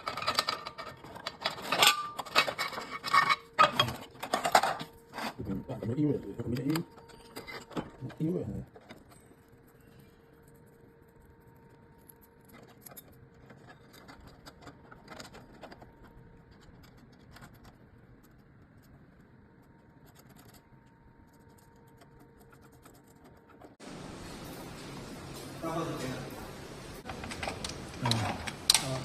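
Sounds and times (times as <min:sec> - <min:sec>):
metal hardware clicking and rattling: 0:00.0 - 0:05.4, 0:27.0 - 0:29.0
faint hum: 0:00.0 - 0:29.0.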